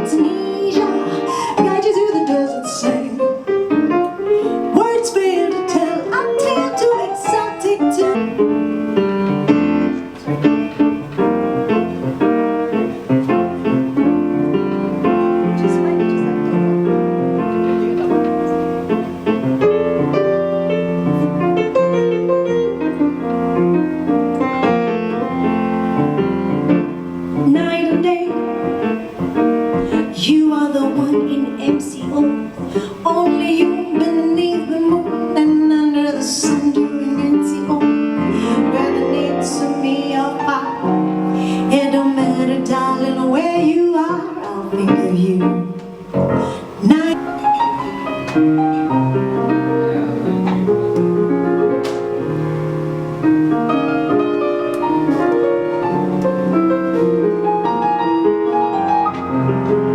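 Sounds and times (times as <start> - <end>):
piano: 0.0 - 59.9
live band playing instrumental: 8.2 - 27.0, 45.9 - 57.7.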